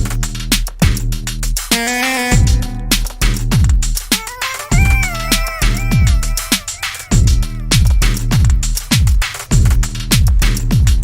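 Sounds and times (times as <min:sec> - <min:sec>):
electronic music with heavy beat: 0:00.0 - 0:11.0.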